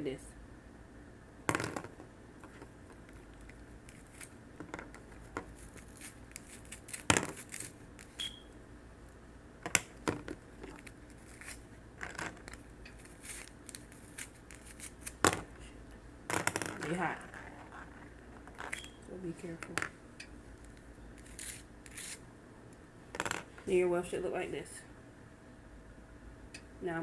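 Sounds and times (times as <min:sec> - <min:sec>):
rustling of hair: 0:05.1 - 0:08.2, 0:20.6 - 0:22.2.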